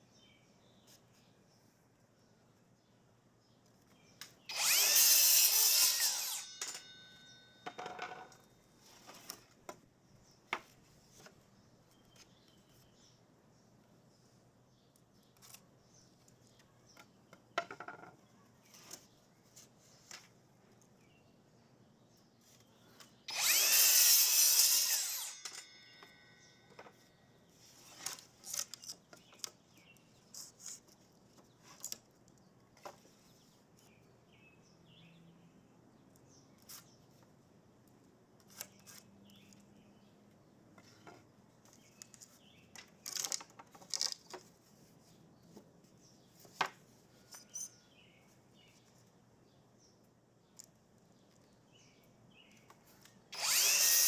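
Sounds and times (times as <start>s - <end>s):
power drill running: 4.5s - 6.8s, 23.3s - 25.7s, 53.3s - 54.0s.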